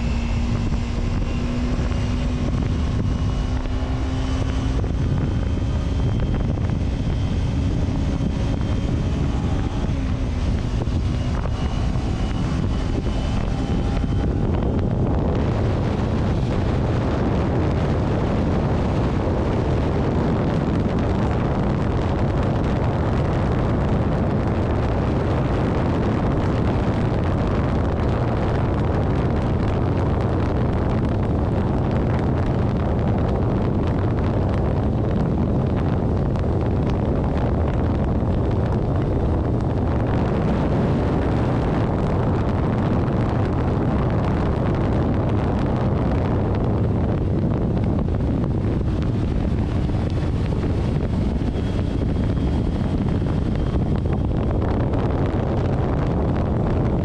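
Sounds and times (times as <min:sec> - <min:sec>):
vehicle road noise: 0:00.0 - 0:57.0
wind rushing on microphone: 0:00.0 - 0:57.0.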